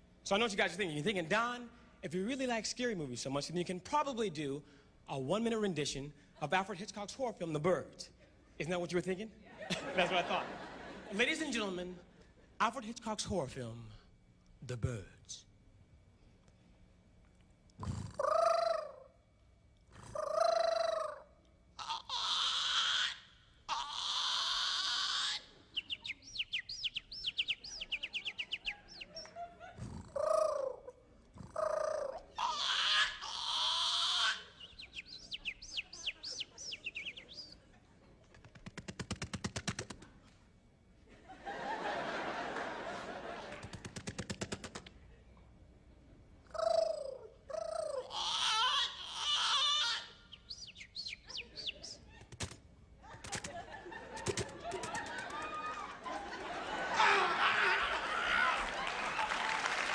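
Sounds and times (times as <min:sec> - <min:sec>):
man imitating bird calls: 0:18.2 - 0:19.1, 0:20.0 - 0:29.3, 0:30.1 - 0:30.9, 0:31.5 - 0:37.6, 0:46.5 - 0:52.0.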